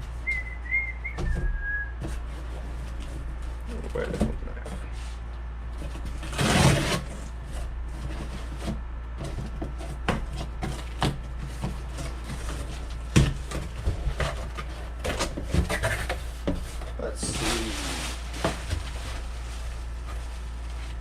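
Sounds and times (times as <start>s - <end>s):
steady low hum: 0.0s - 21.0s
items knocking and clicking: 8.0s - 17.0s
packaging rustling: 10.8s - 21.0s.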